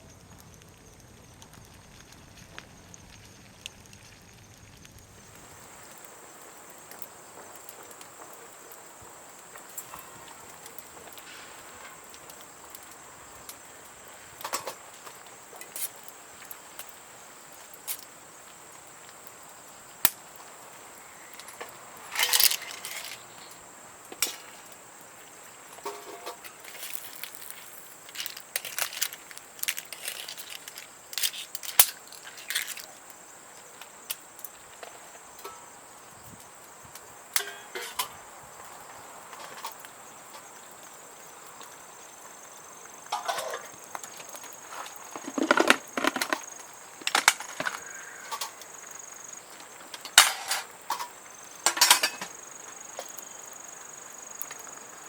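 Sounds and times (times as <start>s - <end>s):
camp cooking clicks and knocks: 0.0s - 55.0s
high-pitched insect trill: 11.7s - 55.0s.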